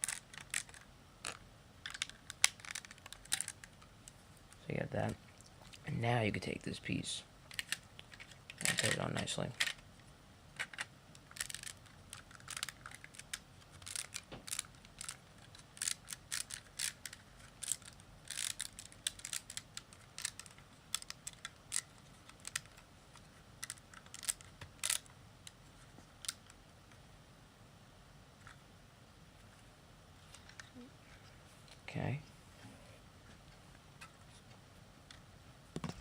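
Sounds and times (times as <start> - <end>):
plastic bricks clicking: 0.0 - 3.7.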